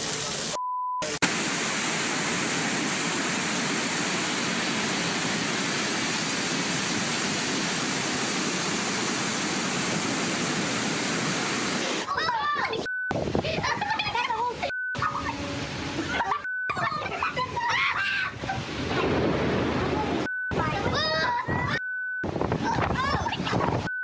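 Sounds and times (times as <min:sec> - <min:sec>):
heavy rain pouring: 0:00.0 - 0:12.1, 0:18.3 - 0:20.3
short steady beep: 0:12.7 - 0:13.2, 0:14.6 - 0:15.2, 0:16.4 - 0:16.8, 0:21.7 - 0:22.3.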